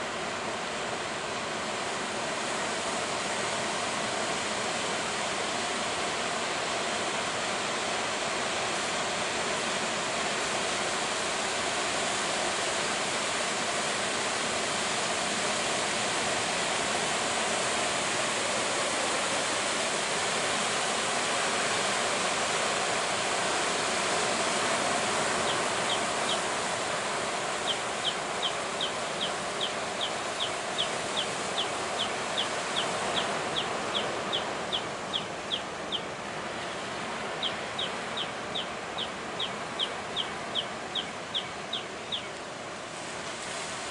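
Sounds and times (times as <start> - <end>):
heavy surf breaking: 21.4 - 41.4.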